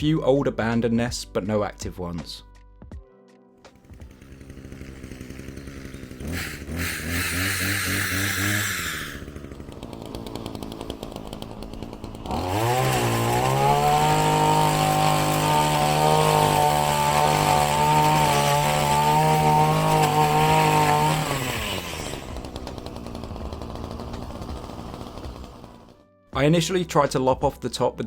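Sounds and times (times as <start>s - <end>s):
pole saw motor revving: 3.7s - 26.0s.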